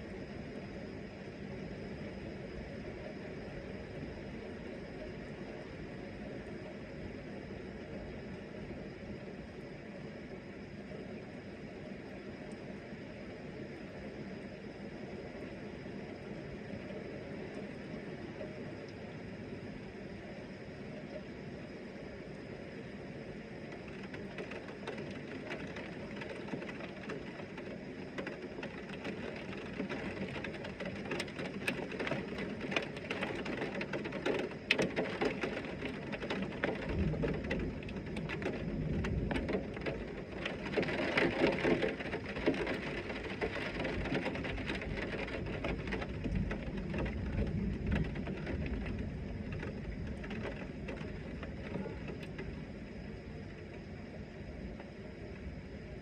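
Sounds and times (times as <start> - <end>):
heavy rain falling: 23.6 - 53.7
deep rumble: 41.8 - 56.0.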